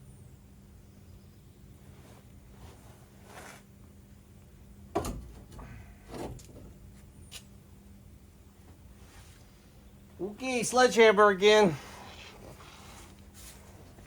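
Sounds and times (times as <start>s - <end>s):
soft rustling: 1.8s - 3.7s, 11.8s - 14.0s.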